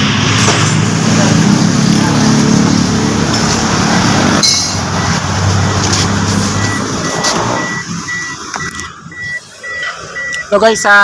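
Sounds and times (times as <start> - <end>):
vehicle engine noise: 0.0 - 11.0
short electronic beeps: 4.4 - 11.0.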